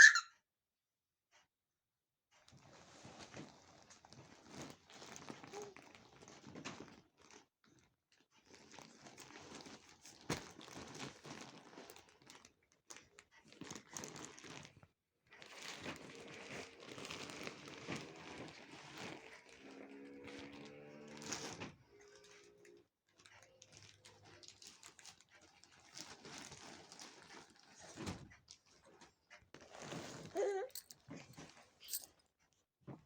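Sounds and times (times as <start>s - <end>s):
faint rustling and crinkling: 2.3s - 33.0s.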